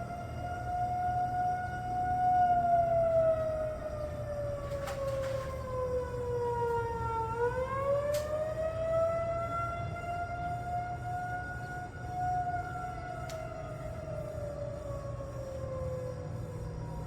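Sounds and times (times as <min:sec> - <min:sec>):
warning siren wailing: 0:00.0 - 0:17.0.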